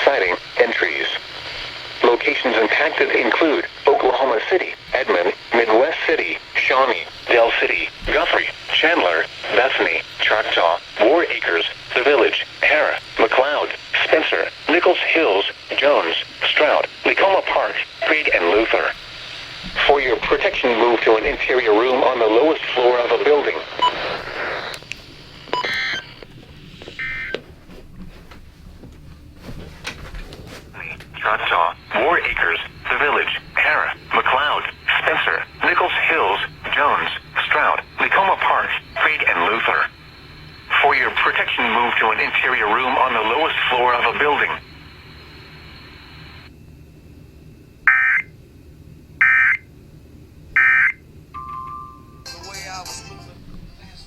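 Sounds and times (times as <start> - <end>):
low background noise: 0.0 - 54.0
steady beep tone: 25.4 - 26.2, 26.8 - 27.4, 31.2 - 46.3
digital data tone bursts: 31.2 - 40.0, 40.7 - 46.3, 47.9 - 48.3, 50.6 - 51.0.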